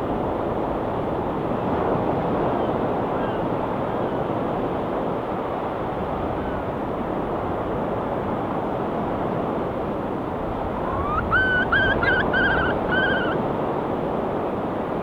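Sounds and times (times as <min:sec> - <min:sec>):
gull calling: 0:10.7 - 0:13.4.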